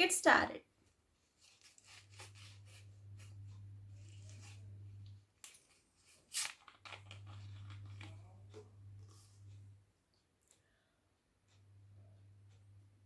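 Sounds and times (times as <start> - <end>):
steady low hum: 1.9 - 5.3, 6.9 - 9.9, 11.4 - 13.0
plastic bottle clicks and rustles: 6.3 - 8.6.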